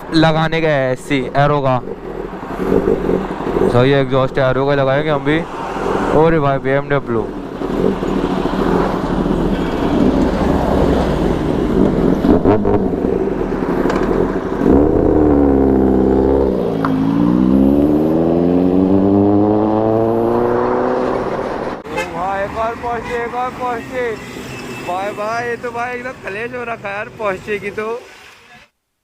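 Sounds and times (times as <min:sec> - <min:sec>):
loud vehicle engine accelerating: 0:01.8 - 0:21.8.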